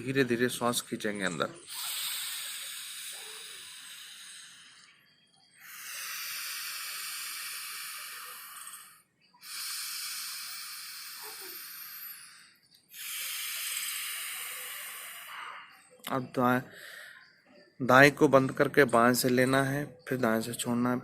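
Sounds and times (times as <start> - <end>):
nasal breathing: 1.6 - 17.8.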